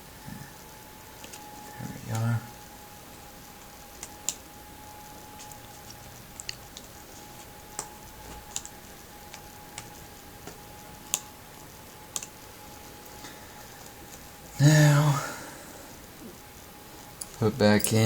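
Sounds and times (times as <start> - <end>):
faint high hum: 0.0 - 18.0
laptop parts clicking and tapping: 3.6 - 4.5, 5.3 - 11.3, 12.1 - 12.5.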